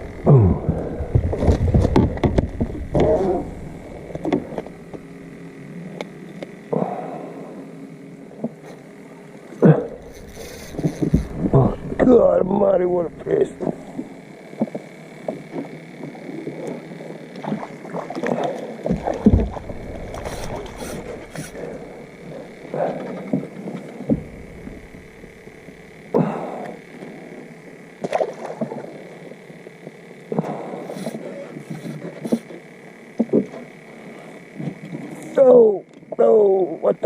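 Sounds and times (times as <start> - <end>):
low rumble: 0.0 - 5.0, 10.0 - 14.2, 19.0 - 22.7
faint high whine: 0.0 - 37.0
fishing gear knocking and rustling: 1.0 - 5.1.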